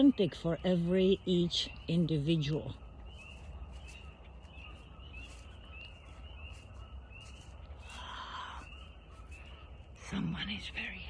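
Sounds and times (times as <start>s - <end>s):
bird chirping: 0.0s - 11.0s
rustling noise: 2.5s - 10.9s.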